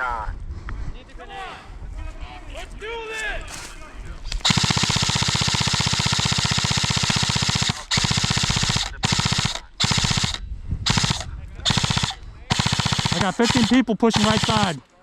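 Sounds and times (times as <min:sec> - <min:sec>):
airsoft machine gun bursts: 0:04.4 - 0:14.8.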